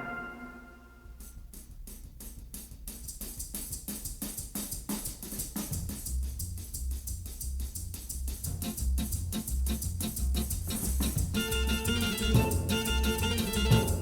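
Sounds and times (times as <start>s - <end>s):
music with drum beat: 1.0s - 14.0s
heavy bass line: 5.7s - 14.0s.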